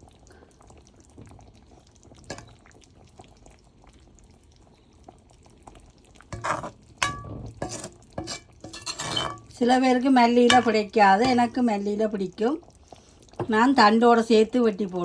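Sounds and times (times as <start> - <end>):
curry simmering in a pot: 0.0 - 15.0
spoon clinking against pot: 6.4 - 9.5, 10.4 - 11.4.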